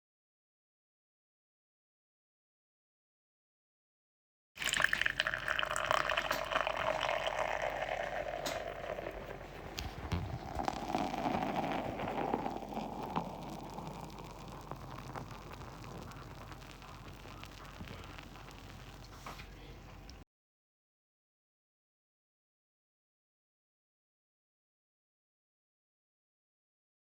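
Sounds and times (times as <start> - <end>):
beer pouring into a glass: 4.6 - 20.2.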